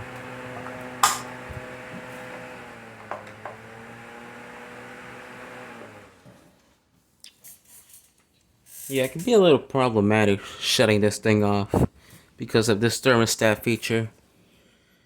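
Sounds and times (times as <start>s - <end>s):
desk fan motor hum: 0.0s - 6.3s.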